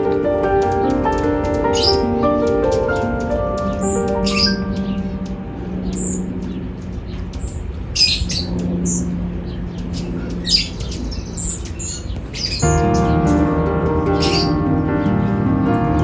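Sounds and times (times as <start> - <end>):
small birds chirping: 0.0 - 16.0.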